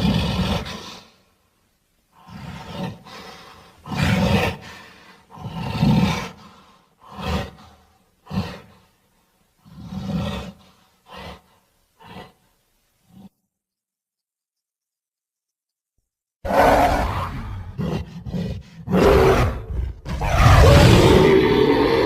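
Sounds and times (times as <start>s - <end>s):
monster growls and roars: 16.5s - 22.0s.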